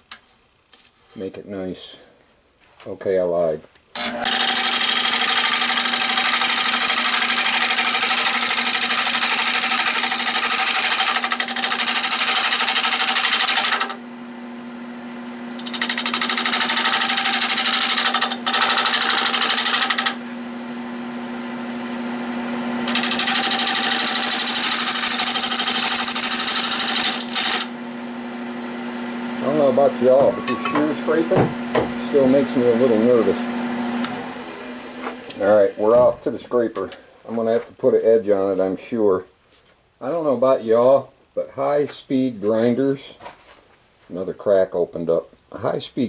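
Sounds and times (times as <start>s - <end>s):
wood lathe hum: 4.0s - 36.0s.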